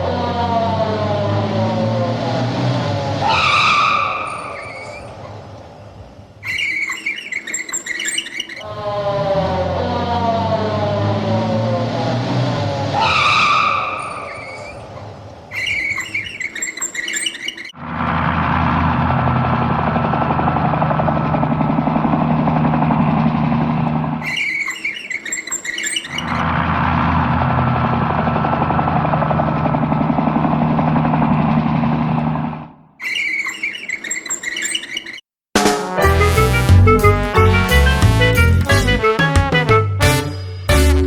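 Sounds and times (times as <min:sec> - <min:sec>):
vehicle engine humming: 0:17.8 - 0:24.2, 0:26.3 - 0:32.8
drum music: 0:35.6 - 0:41.0.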